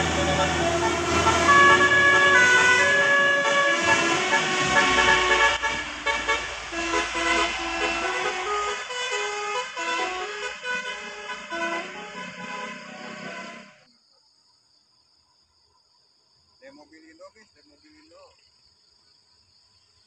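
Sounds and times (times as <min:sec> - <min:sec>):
musical bus horn melody: 0:00.0 - 0:13.9.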